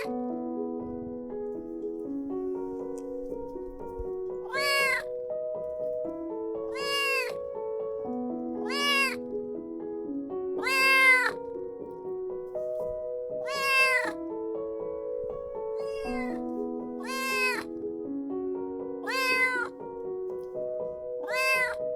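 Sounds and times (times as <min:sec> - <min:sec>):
background piano music: 0:00.0 - 0:21.9
kitten meowing: 0:04.4 - 0:05.1, 0:06.7 - 0:07.4, 0:08.6 - 0:09.3, 0:10.6 - 0:11.4, 0:13.4 - 0:14.2, 0:15.8 - 0:16.4, 0:17.0 - 0:17.7, 0:19.0 - 0:19.8, 0:21.2 - 0:21.8.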